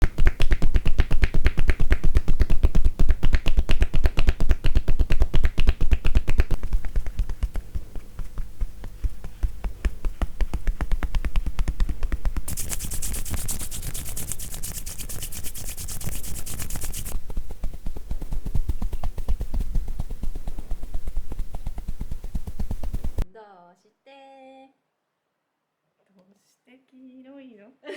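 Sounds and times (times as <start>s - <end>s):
crisp bright tapping: 0.0s - 17.2s
hands tapping on body: 0.0s - 17.2s, 17.9s - 23.2s.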